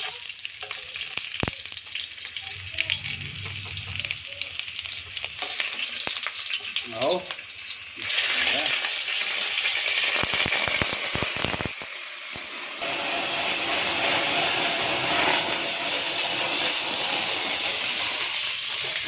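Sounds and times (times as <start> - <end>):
food sizzling in hot oil: 0.0 - 19.0.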